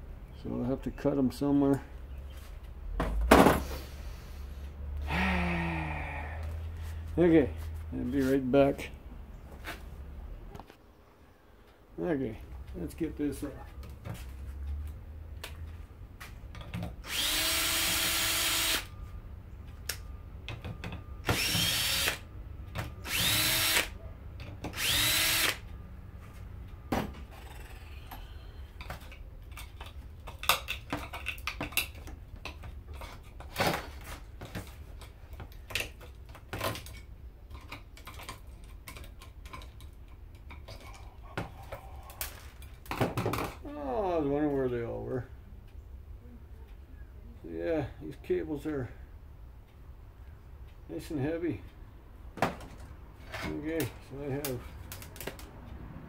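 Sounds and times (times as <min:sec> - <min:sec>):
power drill spinning up: 0:17.0 - 0:18.9, 0:21.2 - 0:22.2, 0:23.0 - 0:23.9, 0:24.8 - 0:25.6
parts clicking and knocking: 0:26.6 - 0:43.6.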